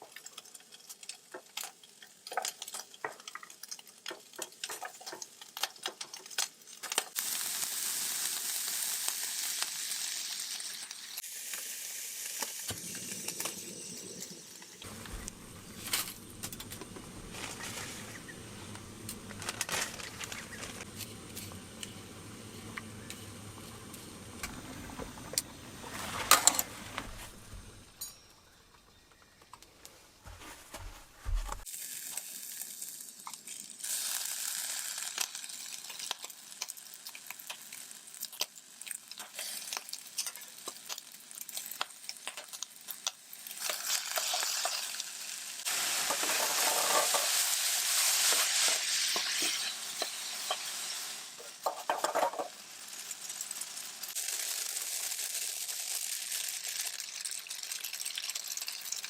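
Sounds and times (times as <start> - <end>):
food sizzling in a frying pan: 0.0 - 26.7, 31.6 - 59.0
utensil clinking and scraping a pan: 25.8 - 26.9, 45.7 - 52.6.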